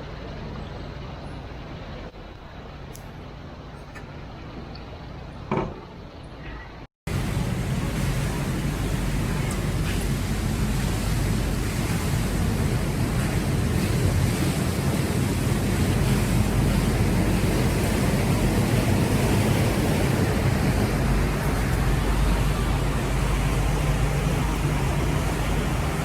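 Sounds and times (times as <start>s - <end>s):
rushing water on rapids: 7.1s - 26.0s.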